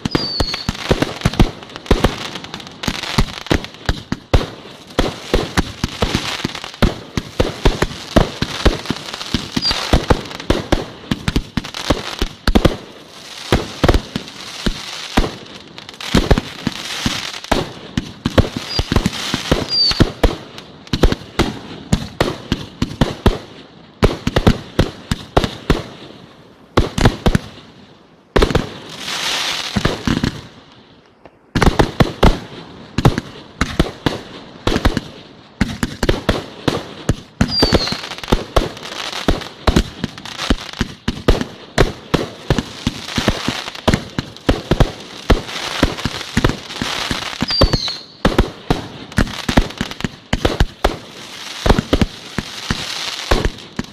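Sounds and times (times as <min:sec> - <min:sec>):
high whistles: 0:00.0 - 0:00.8, 0:09.6 - 0:09.9, 0:18.6 - 0:20.1, 0:37.5 - 0:38.1, 0:47.4 - 0:48.2
fireworks bangs: 0:00.0 - 0:27.7, 0:28.3 - 0:30.6, 0:31.2 - 0:53.9
fireworks crackling: 0:00.0 - 0:53.9.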